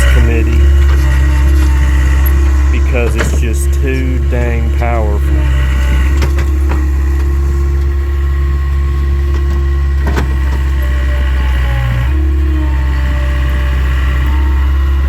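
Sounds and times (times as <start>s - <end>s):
diesel engine running: 0.0s - 15.0s.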